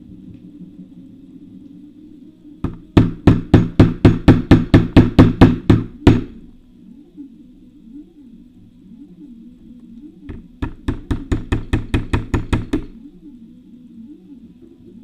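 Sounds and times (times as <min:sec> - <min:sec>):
hammer tapping a nail punch: 0:10.6 - 0:12.9.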